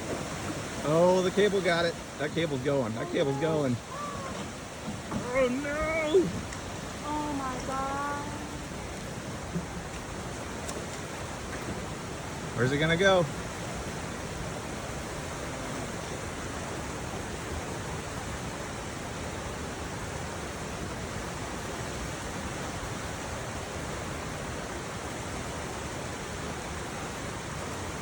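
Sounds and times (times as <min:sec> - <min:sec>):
water rushing: 0:00.0 - 0:28.0.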